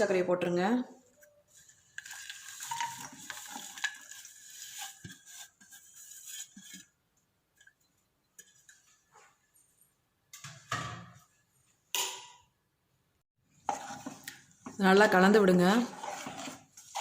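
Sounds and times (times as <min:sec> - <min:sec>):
spoon scraping in a pan: 0:01.2 - 0:07.0, 0:13.5 - 0:17.0.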